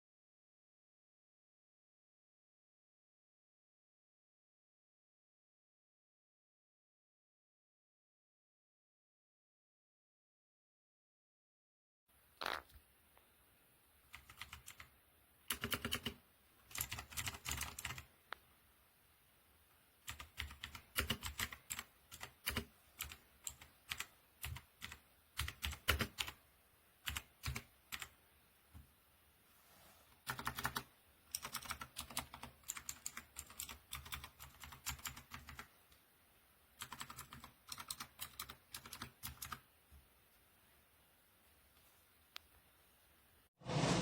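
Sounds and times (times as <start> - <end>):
mechanical keyboard keys clacking: 14.1 - 14.9, 15.5 - 18.0, 20.0 - 26.4, 30.3 - 35.7, 36.8 - 39.6.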